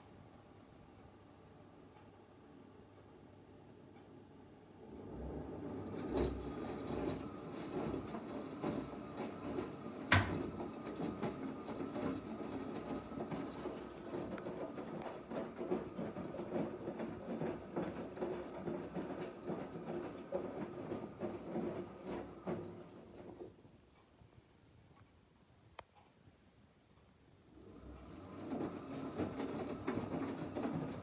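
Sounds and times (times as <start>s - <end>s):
washing machine drum rumble and clatter: 4.8s - 23.6s, 27.7s - 31.0s.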